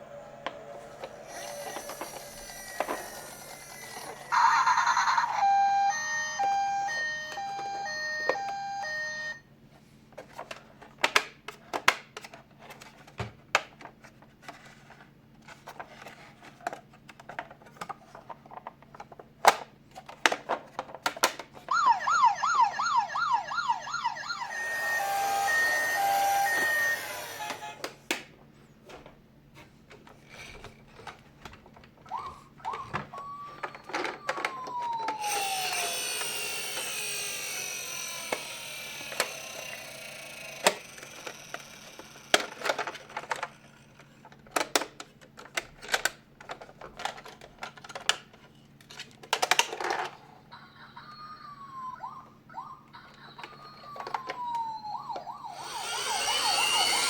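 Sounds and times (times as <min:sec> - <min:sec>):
steady whirring: 0:00.0 - 0:04.4, 0:21.7 - 0:27.8, 0:33.2 - 0:43.7, 0:53.2 - 0:57.0
toy siren wailing: 0:00.0 - 0:09.4, 0:21.7 - 0:27.8, 0:32.1 - 0:43.0, 0:50.5 - 0:57.0.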